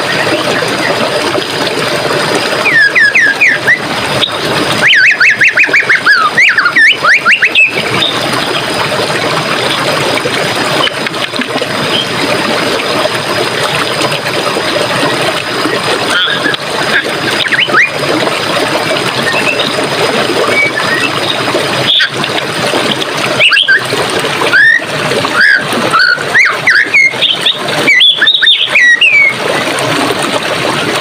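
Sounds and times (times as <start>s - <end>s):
stream water trickling: 0.0s - 31.0s
bird whistled calls: 2.6s - 8.2s, 16.3s - 18.0s, 20.5s - 21.2s, 23.4s - 23.8s, 24.5s - 29.4s.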